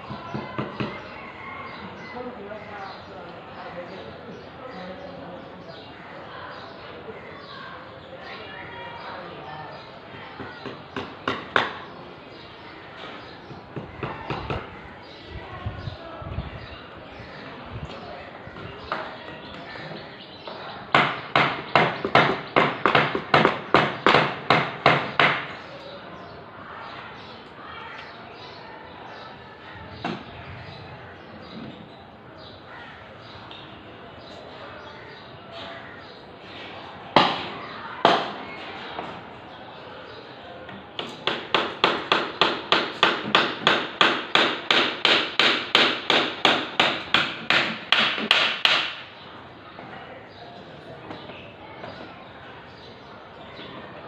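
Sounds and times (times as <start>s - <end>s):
hammer striking wood: 10.6s - 11.8s, 20.9s - 25.5s, 37.2s - 38.4s, 41.0s - 49.1s.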